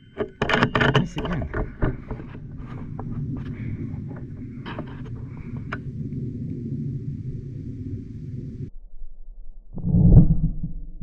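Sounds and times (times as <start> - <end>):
wind buffeting microphone: 0.0 - 8.7.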